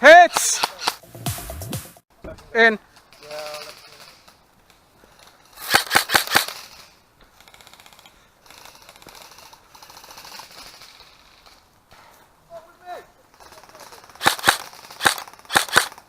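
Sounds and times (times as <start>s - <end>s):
airsoft rifle shots: 0.1s - 1.0s, 5.6s - 10.8s, 13.4s - 16.0s
distant airsoft fire rattle: 2.9s - 12.1s, 13.2s - 16.0s.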